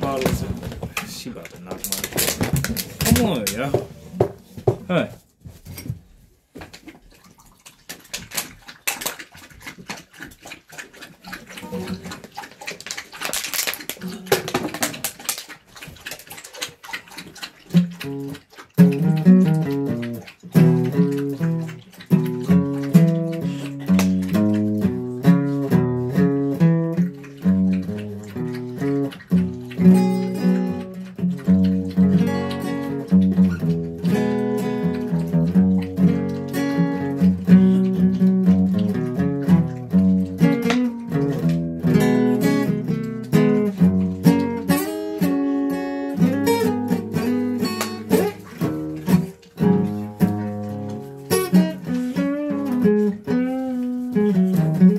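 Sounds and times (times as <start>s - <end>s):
clicks and rustling: 0.0s - 4.0s
guitar picking single notes: 35.9s - 54.9s.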